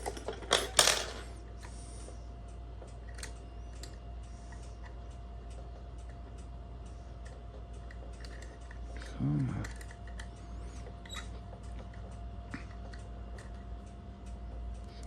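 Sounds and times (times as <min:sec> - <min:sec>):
metal clatter: 0:00.0 - 0:01.3
lock picks clicking and scraping: 0:00.0 - 0:01.4, 0:07.2 - 0:12.1.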